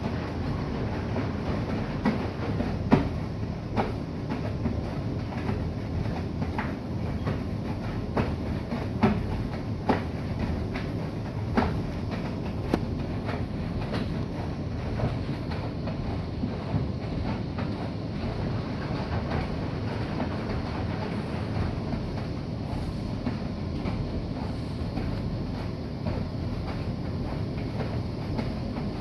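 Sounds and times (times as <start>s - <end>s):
washing machine rumble: 0.0s - 29.0s.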